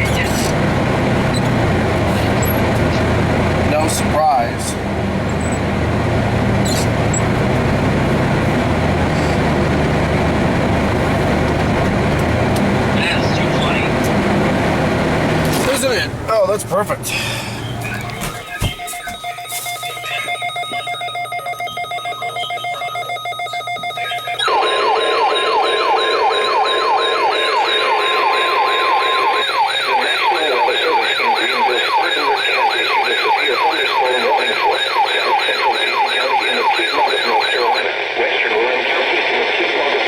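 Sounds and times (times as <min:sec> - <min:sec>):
sweeping siren-like tone: 0:18.2 - 0:37.6.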